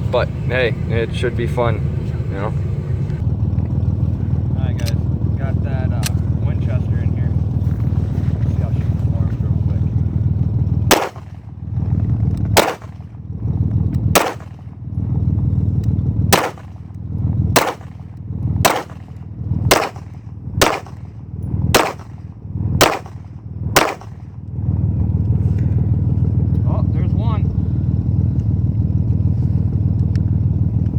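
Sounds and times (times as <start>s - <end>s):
pistol shots: 10.9s - 11.4s, 12.6s - 13.1s, 14.1s - 14.6s, 16.3s - 16.9s, 17.6s - 21.1s, 21.7s - 22.2s, 22.8s - 24.3s.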